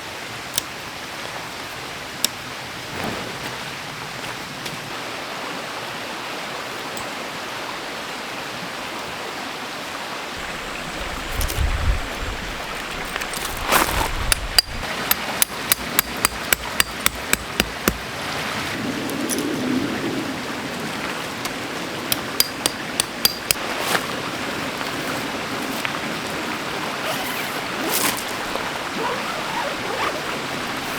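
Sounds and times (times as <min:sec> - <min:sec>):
rushing water: 0:00.0 - 0:30.9
handling noise: 0:10.4 - 0:14.9, 0:27.0 - 0:30.9
hammer striking: 0:22.1 - 0:23.6.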